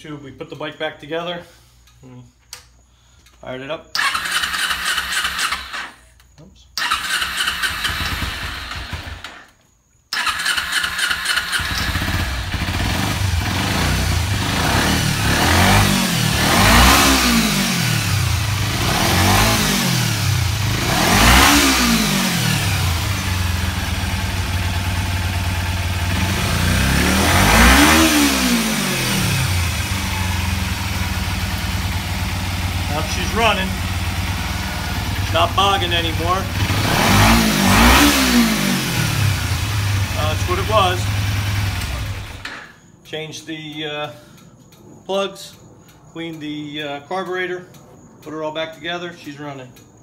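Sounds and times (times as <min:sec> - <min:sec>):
motorcycle engine revving: 0:04.0 - 0:05.9, 0:06.8 - 0:09.4, 0:10.2 - 0:42.6.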